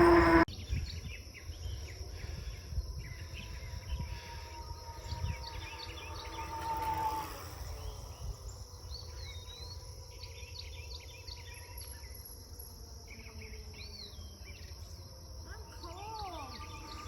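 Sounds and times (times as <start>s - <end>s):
wind rumble on microphone: 0.0s - 11.1s
insects droning: 0.0s - 17.0s
songbirds chirping: 0.0s - 17.0s.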